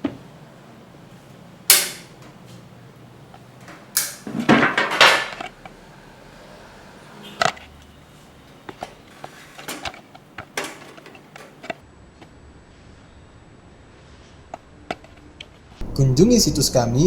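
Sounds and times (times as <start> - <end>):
metal parts clattering: 4.0 - 5.4, 9.2 - 11.7.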